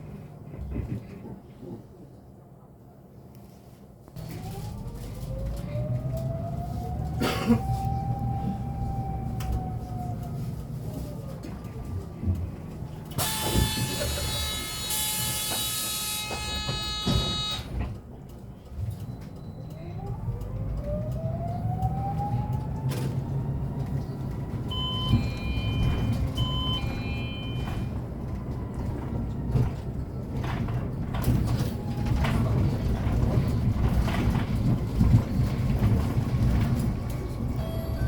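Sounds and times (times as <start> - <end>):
road rumble: 0.0 - 38.0
electric bus drive whine: 4.2 - 38.0
short beeps: 24.7 - 27.9.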